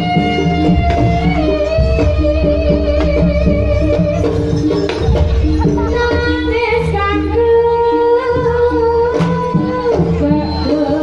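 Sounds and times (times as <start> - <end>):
long-held melodic line: 0.0 - 9.1
quick repeated pitched notes: 0.4 - 8.7
steady drum pulse: 0.5 - 7.9.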